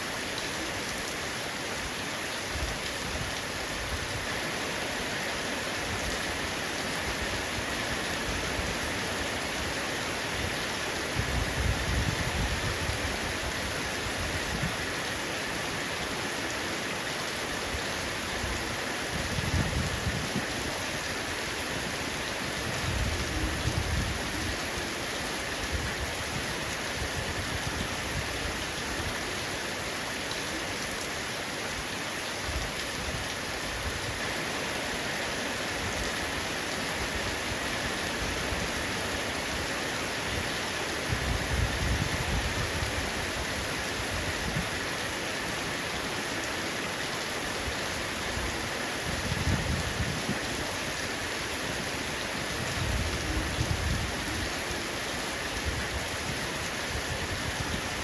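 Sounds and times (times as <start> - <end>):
heavy rain on a roof: 0.0 - 58.0.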